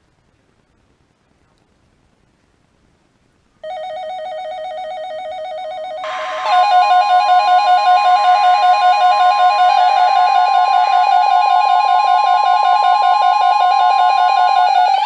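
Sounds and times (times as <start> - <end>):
steady warning alert tone: 3.6 - 15.0
fast-warbling electronic beep: 5.2 - 15.0.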